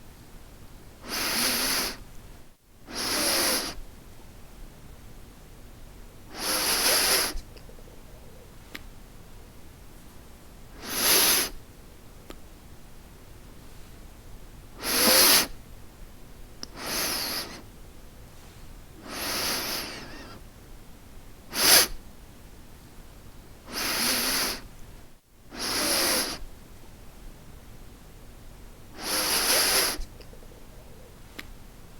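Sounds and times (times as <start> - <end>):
nose sniffing: 1.0 - 2.0, 2.9 - 3.8, 6.3 - 8.5, 10.8 - 11.6, 14.8 - 15.6, 16.6 - 17.7, 19.0 - 20.4, 21.5 - 22.0, 23.7 - 24.7, 25.5 - 26.5, 29.0 - 31.2.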